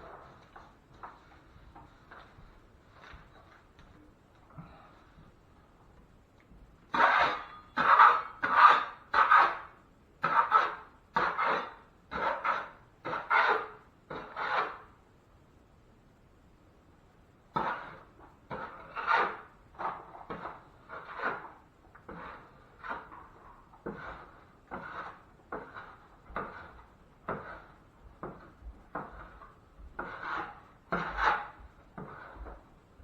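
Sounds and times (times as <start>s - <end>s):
drywall knife scraping compound: 6.9s - 15.0s, 17.5s - 32.8s.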